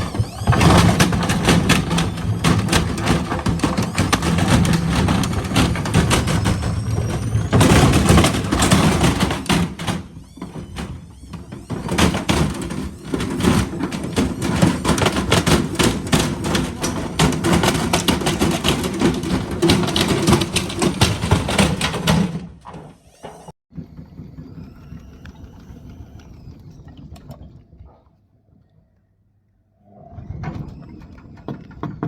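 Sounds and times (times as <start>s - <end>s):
washing machine banging and clattering: 0.0s - 22.9s.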